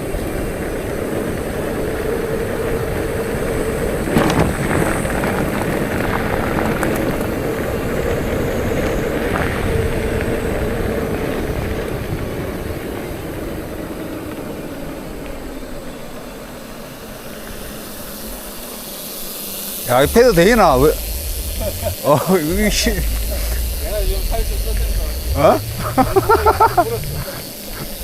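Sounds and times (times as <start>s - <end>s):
bicycle tyres rolling: 0.0s - 16.4s, 19.9s - 28.0s
faint steady hum: 19.9s - 28.0s
wind rushing over microphone: 19.9s - 28.0s.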